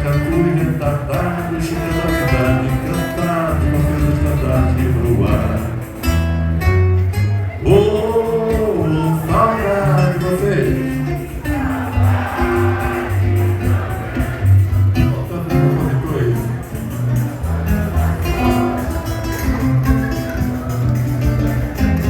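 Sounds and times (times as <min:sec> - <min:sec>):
person singing with vibrato: 0:00.0 - 0:06.0
bass line: 0:00.0 - 0:22.0
guitar: 0:00.0 - 0:22.0.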